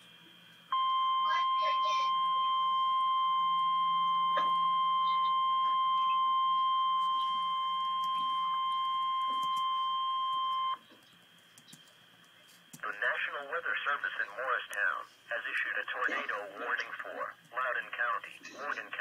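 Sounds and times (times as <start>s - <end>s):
steady alarm tone: 0.7s - 10.8s.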